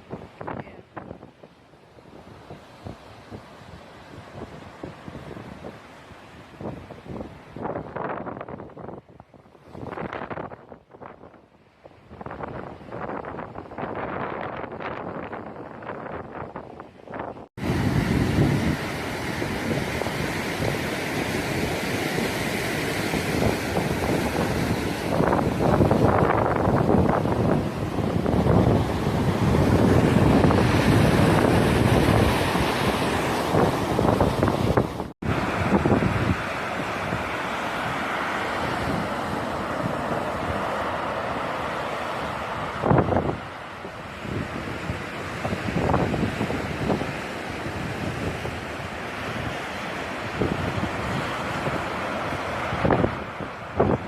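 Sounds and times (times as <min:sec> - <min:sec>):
rough storm surf: 0:00.0 - 0:54.0
wind buffeting microphone: 0:00.0 - 0:54.0.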